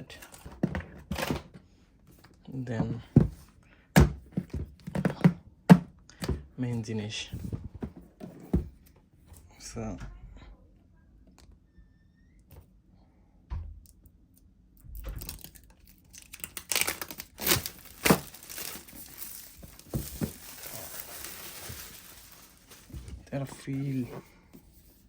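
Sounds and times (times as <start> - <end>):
packaging ripping and crinkling: 15.2 - 24.0.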